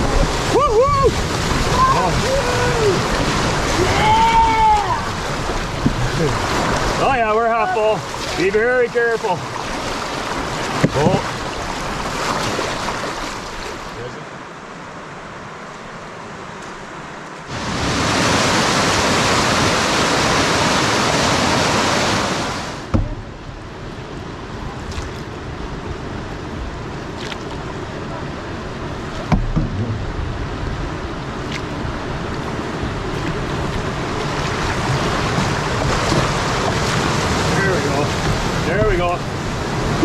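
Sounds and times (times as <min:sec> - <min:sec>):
whitewater rushing: 0:00.0 - 0:40.0
sharp knocks: 0:29.2 - 0:30.1.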